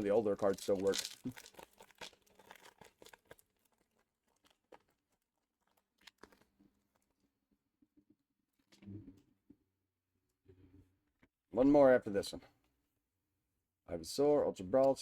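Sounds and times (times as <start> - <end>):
trading cards crinkling: 0.0 - 6.5.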